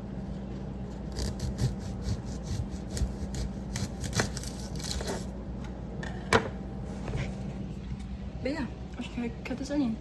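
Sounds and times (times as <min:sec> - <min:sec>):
steady low hum: 0:00.0 - 0:10.0
knife cutting onion on board: 0:01.0 - 0:05.3.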